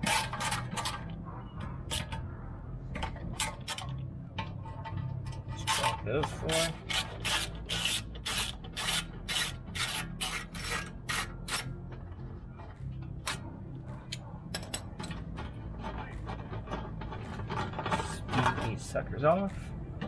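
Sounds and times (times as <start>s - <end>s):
ratchet wrench clicking: 6.6s - 11.7s.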